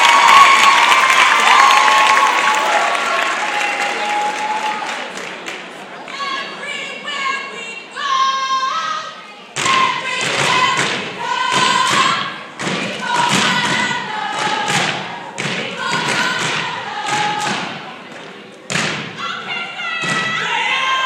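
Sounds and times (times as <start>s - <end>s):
group chanting and singing: 9.6s - 18.3s
unison stomps and claps: 9.6s - 19.2s.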